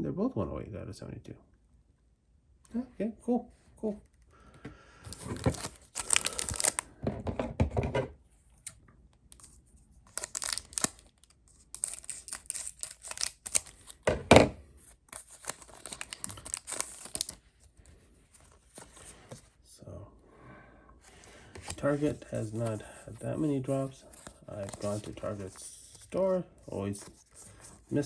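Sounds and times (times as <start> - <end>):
foil wrapper tearing and crinkling: 5.1 - 6.9, 9.4 - 14.0, 14.8 - 17.5, 21.6 - 26.0.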